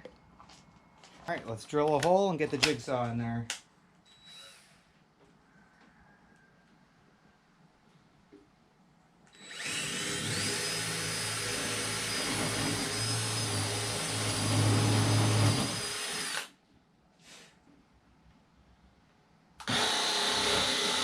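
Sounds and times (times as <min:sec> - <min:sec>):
power drill boring into wood: 0:09.3 - 0:16.5, 0:19.6 - 0:21.0.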